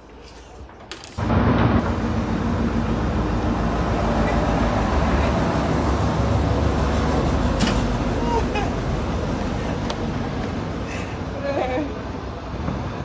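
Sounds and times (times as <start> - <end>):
moving vehicle rushing noise: 1.2 - 10.9.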